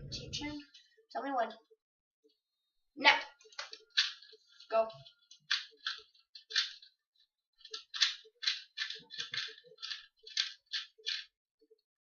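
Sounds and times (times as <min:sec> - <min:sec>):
puzzle cube plastic clicks: 0:03.5 - 0:04.3, 0:05.3 - 0:06.9, 0:07.6 - 0:11.4.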